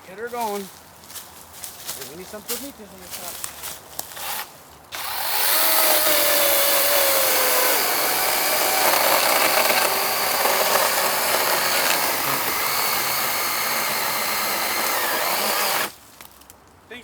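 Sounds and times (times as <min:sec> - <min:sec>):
electric chainsaw cutting wood: 0:05.0 - 0:16.0.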